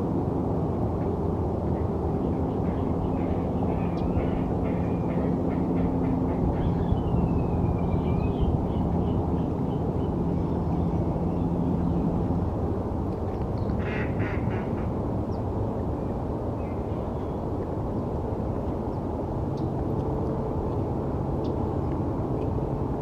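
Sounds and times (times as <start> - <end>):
city traffic rumble: 0.0 - 23.0
bird calls: 2.6 - 11.4.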